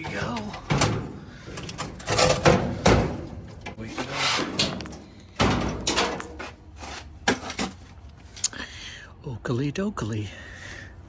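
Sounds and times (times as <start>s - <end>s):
parts knocking and scraping: 0.0s - 8.5s.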